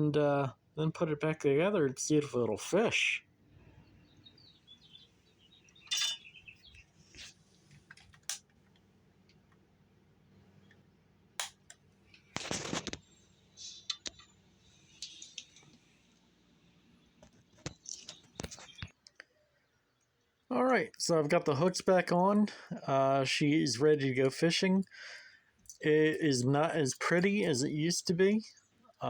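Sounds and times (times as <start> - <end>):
small metallic clicks and clinks: 5.9 - 6.3, 25.6 - 25.8.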